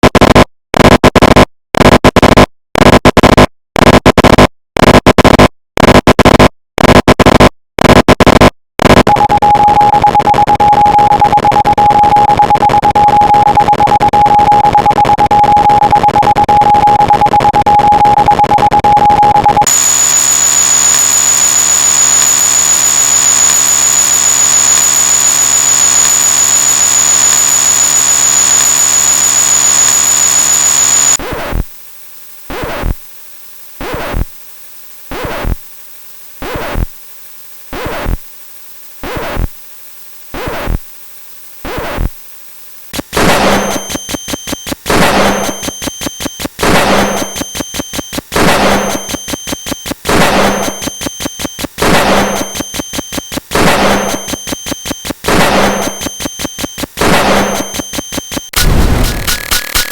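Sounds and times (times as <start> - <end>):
high steady whine: 19.5 - 38.8, 40.6 - 59.9
stacked sound effects: 43.0 - 59.9.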